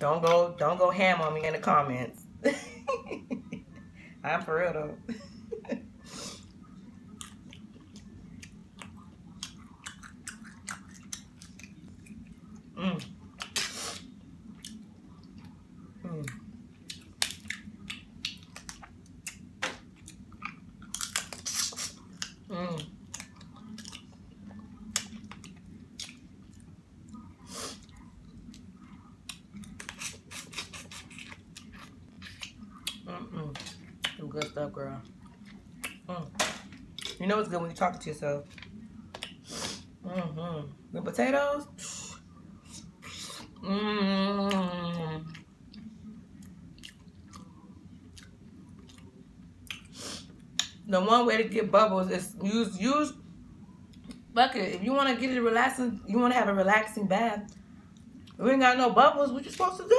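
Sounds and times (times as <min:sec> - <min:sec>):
person chewing food: 0:07.1 - 0:34.2, 0:36.7 - 0:37.2, 0:38.5 - 0:39.8, 0:44.5 - 0:50.7.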